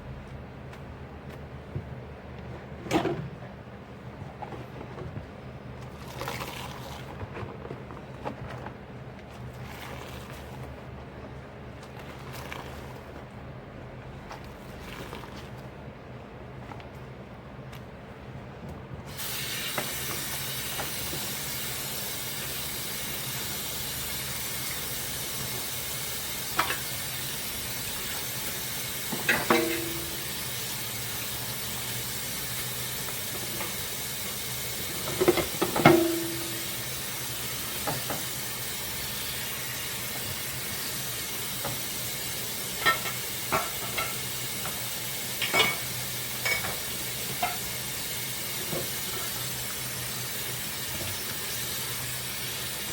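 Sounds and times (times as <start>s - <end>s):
dishes knocking and clinking: 29.2s - 30.2s, 45.4s - 46.8s.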